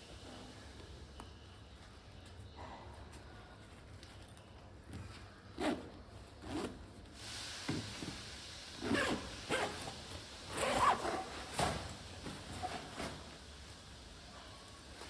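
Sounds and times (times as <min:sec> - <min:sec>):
zipper rasping: 0:05.6 - 0:06.8, 0:08.8 - 0:09.9, 0:10.5 - 0:11.4.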